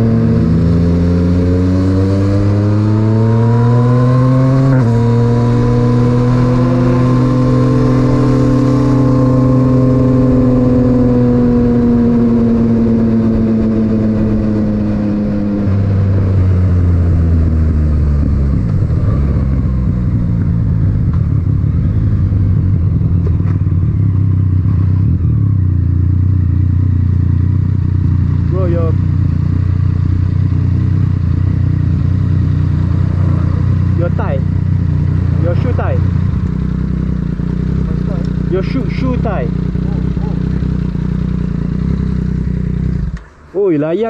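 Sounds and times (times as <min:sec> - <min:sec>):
motorcycle engine running: 0:00.0 - 0:44.0.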